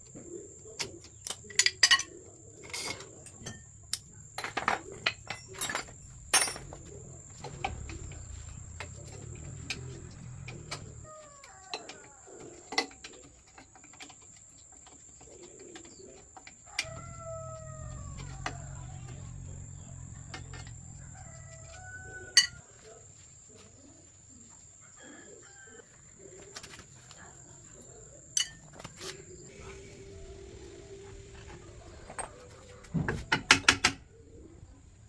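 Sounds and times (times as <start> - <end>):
rooster crowing: 10.0 - 12.7, 16.6 - 22.9, 24.8 - 26.1, 29.5 - 33.3
sharp clicks and knocks: 32.1 - 34.0.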